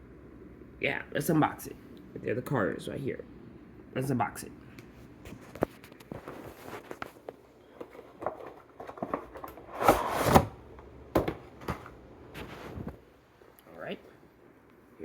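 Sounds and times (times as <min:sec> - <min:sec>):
packaging clicking and crinkling: 0:05.9 - 0:10.5
packaging tearing: 0:09.5 - 0:10.6.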